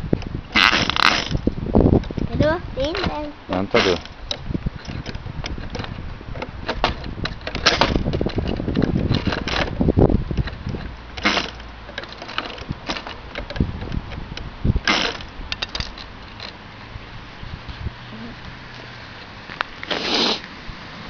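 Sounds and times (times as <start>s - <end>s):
short hisses: 19.9s - 20.5s.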